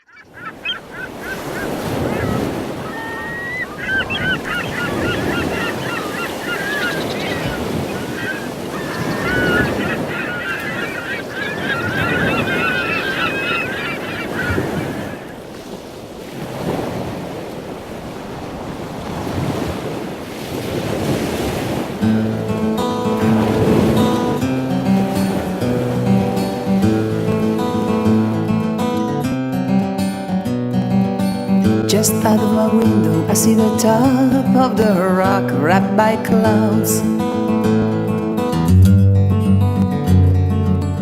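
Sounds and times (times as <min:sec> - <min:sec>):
flock of birds calling: 0:00.0 - 0:15.6
waves washing in: 0:00.0 - 0:38.8.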